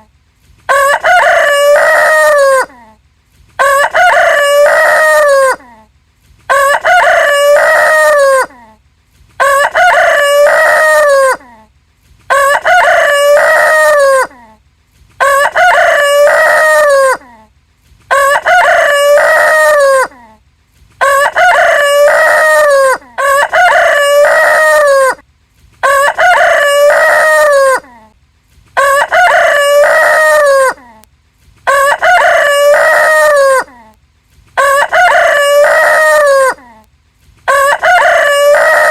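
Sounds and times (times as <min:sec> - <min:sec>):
rooster crowing: 0:00.7 - 0:02.8, 0:03.6 - 0:05.6, 0:06.5 - 0:08.6, 0:09.4 - 0:11.4, 0:12.3 - 0:14.4, 0:15.2 - 0:17.2, 0:18.1 - 0:20.2, 0:21.0 - 0:25.2, 0:25.8 - 0:27.9, 0:28.8 - 0:30.8, 0:31.7 - 0:33.7, 0:34.6 - 0:36.6, 0:37.5 - 0:38.9.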